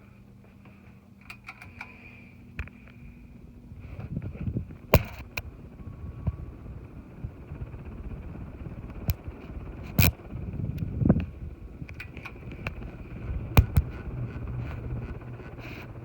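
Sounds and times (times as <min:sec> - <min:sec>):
ceiling fan airflow rumble: 0:00.0 - 0:16.0
sharp clicks: 0:13.5 - 0:14.5.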